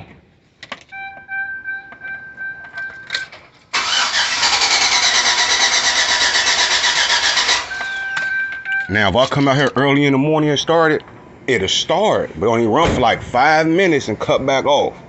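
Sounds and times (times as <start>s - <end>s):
starter cranking engine: 3.7s - 8.1s
electronic warning chimes: 7.5s - 9.3s.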